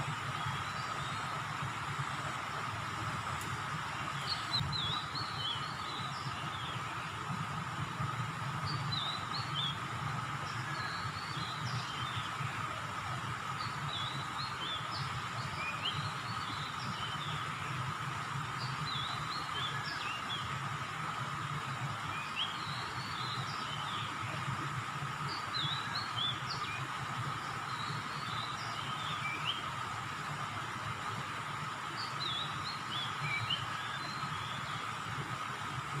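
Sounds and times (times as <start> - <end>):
small birds chirping: 0.3 - 7.2, 31.7 - 35.1.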